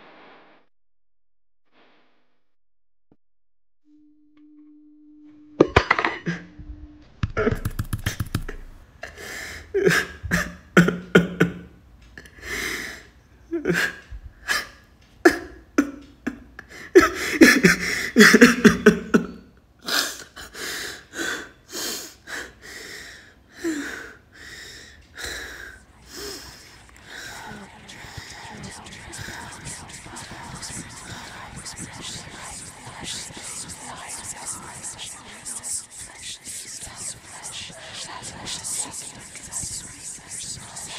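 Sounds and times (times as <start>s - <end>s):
person gasping and heaving breaths: 16.6s - 18.9s, 19.8s - 32.5s.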